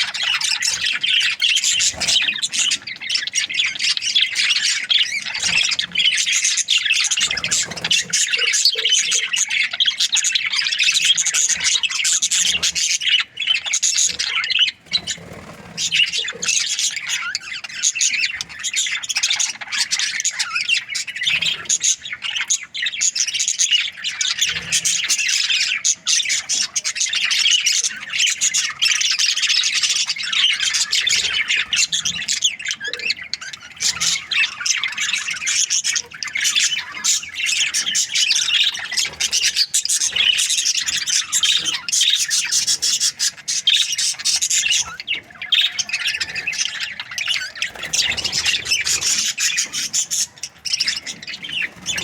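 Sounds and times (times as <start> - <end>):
budgerigars chirping and squawking: 0.0 - 52.0.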